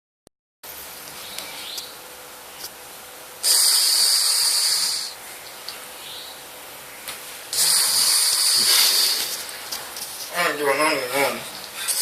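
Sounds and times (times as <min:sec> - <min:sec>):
loud hissing breath: 0:03.4 - 0:05.2, 0:07.5 - 0:09.5
person snoring: 0:03.4 - 0:05.2, 0:07.6 - 0:09.3.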